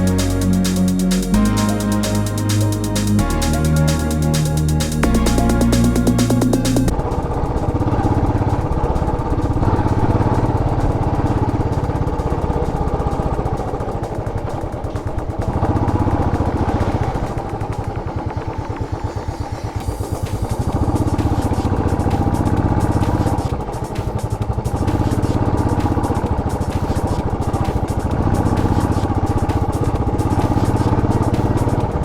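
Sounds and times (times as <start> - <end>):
background music: 0.0 - 7.2
motorcycle engine running: 0.0 - 32.0.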